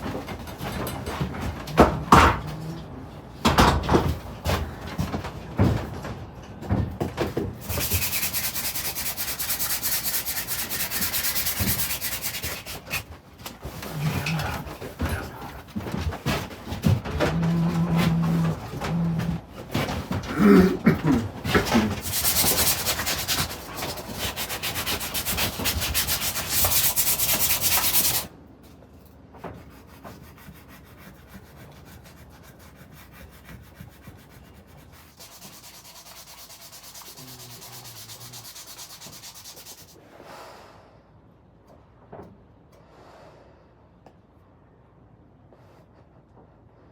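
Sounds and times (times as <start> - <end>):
sanding wood: 7.6 - 13.2, 21.5 - 28.3, 29.6 - 40.0.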